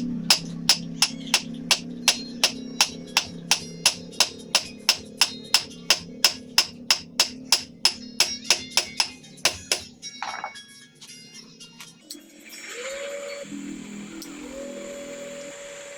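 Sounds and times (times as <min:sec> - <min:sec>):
hammer striking iron on anvil: 0:00.0 - 0:10.0.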